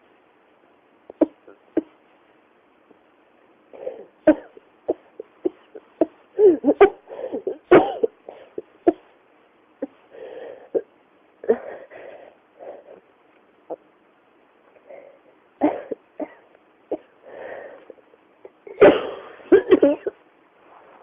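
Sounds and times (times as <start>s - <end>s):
person coughing: 4.3s - 9.0s, 15.6s - 16.4s, 18.7s - 20.2s.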